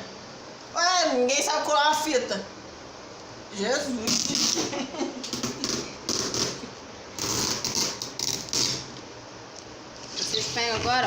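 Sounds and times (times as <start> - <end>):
adhesive tape pulled off roll: 4.1 - 9.0.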